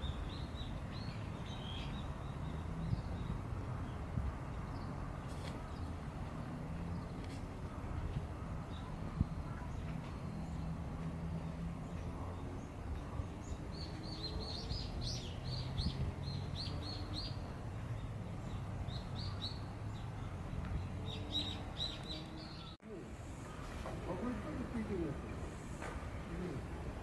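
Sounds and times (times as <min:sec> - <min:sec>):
small bird chirping: 0:11.9 - 0:22.8.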